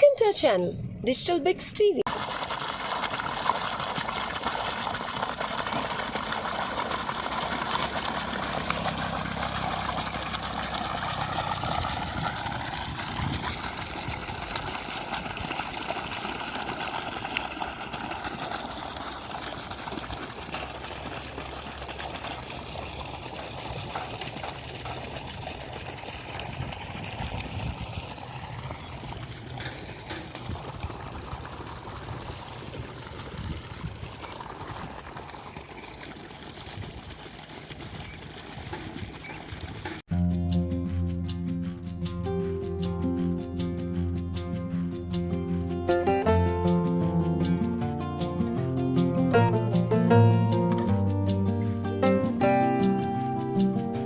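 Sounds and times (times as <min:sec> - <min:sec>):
water splashing and trickling: 0:02.1 - 0:40.6, 0:41.2 - 0:54.0.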